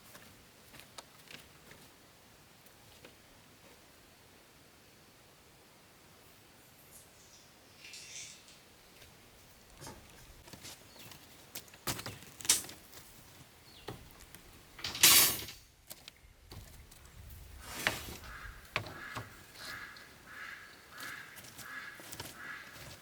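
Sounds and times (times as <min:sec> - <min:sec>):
construction knocks and scrapes: 0:14.8 - 0:15.7.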